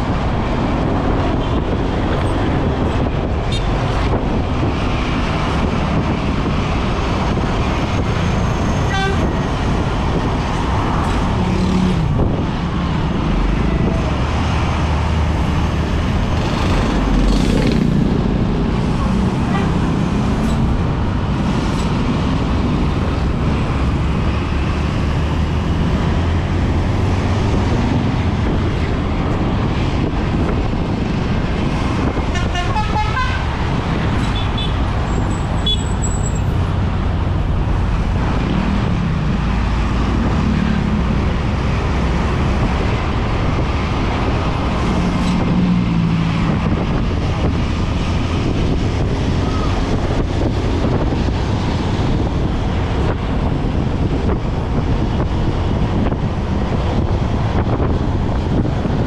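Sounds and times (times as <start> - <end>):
bus engine and road noise: 0.0 - 59.0
musical bus horn tune: 8.8 - 9.4, 19.5 - 19.8, 32.3 - 33.5.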